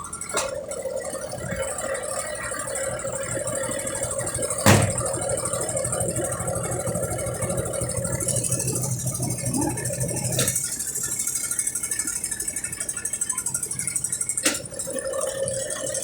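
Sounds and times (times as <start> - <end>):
washing machine motor humming: 0.0 - 16.0.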